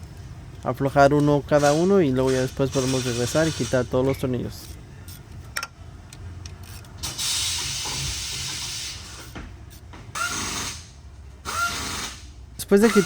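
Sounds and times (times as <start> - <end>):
power ratchet hissing: 1.6 - 4.0, 7.0 - 9.4, 10.1 - 13.0.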